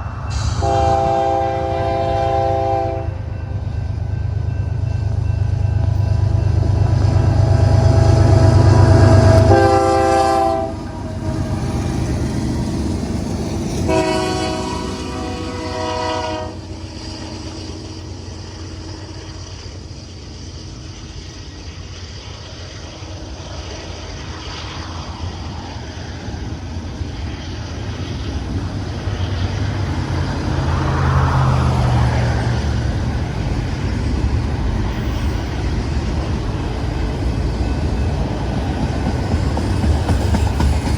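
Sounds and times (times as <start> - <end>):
diesel locomotive engines rumbling: 0.0 - 40.9
train cars rolling on rails: 0.0 - 40.9
multi-tone train horn: 0.4 - 3.4, 7.2 - 12.8, 13.7 - 16.8.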